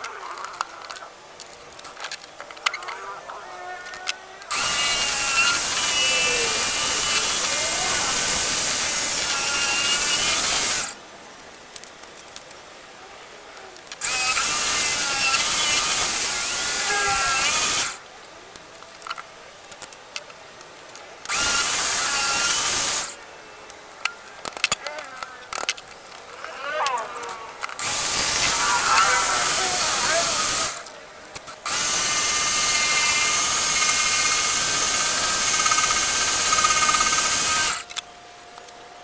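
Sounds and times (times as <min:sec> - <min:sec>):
small clicks and knocks: 0:00.0 - 0:03.0, 0:13.6 - 0:14.2, 0:17.8 - 0:21.4, 0:22.3 - 0:28.5
power tool running: 0:04.5 - 0:11.0, 0:14.0 - 0:18.0, 0:21.3 - 0:23.2, 0:27.6 - 0:30.9, 0:31.5 - 0:38.0.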